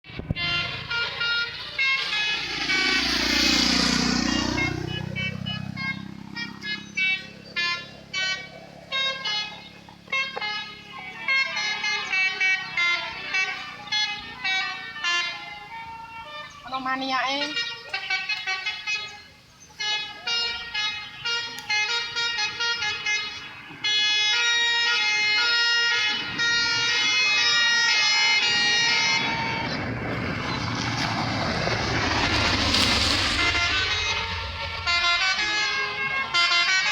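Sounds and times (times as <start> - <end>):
bus engine drone: 0.0 - 16.0, 24.8 - 36.9
musical bus horns: 0.0 - 36.9.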